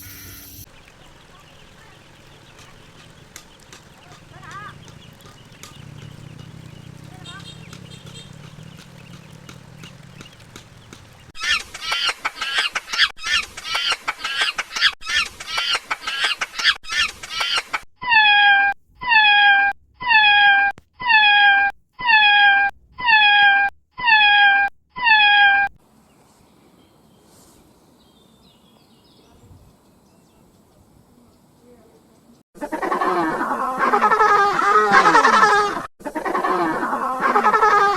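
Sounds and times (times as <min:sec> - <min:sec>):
animal calls: 0:00.6 - 0:25.8, 0:32.6 - 0:37.9.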